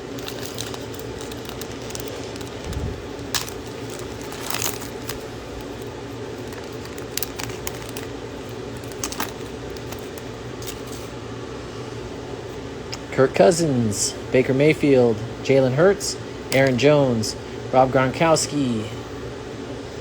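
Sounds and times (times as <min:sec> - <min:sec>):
air conditioner hum: 0:00.0 - 0:20.0
trading cards handled clicks: 0:16.5 - 0:16.8.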